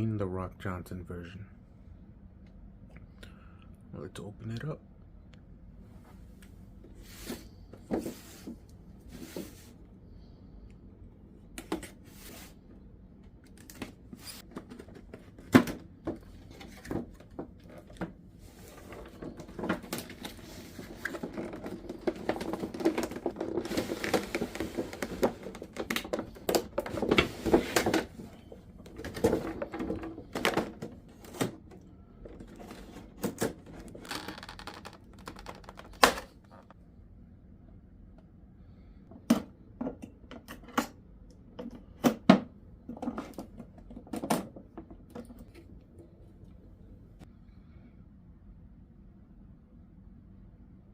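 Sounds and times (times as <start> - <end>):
packaging rustling and crinkling: 18.6 - 31.4.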